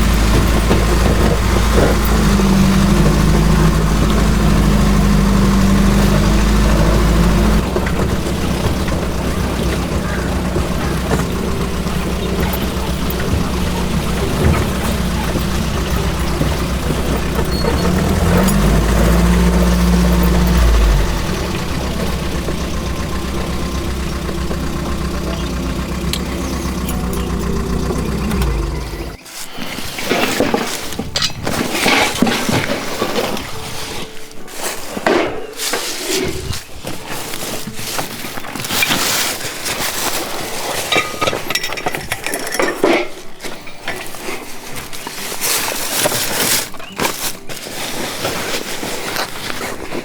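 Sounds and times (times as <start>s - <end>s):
car engine running: 0.0s - 29.2s
crunching and rustling: 0.0s - 50.0s.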